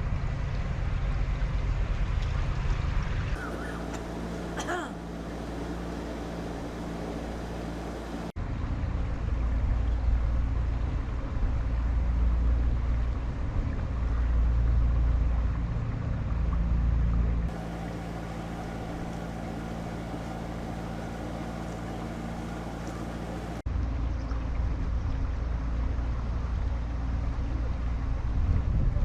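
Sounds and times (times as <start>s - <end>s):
diesel boat engine humming: 3.4s - 8.4s, 17.5s - 23.6s.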